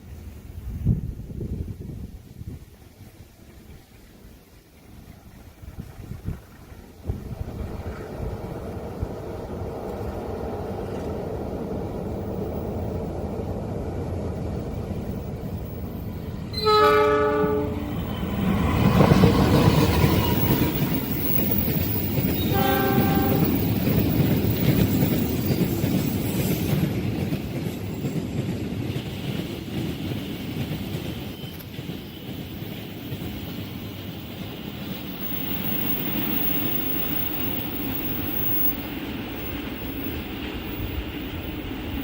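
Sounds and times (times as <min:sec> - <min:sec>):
train rumbling on rails: 0:00.0 - 0:42.0
train horn blasts: 0:16.5 - 0:18.0, 0:19.3 - 0:21.2, 0:22.4 - 0:23.7.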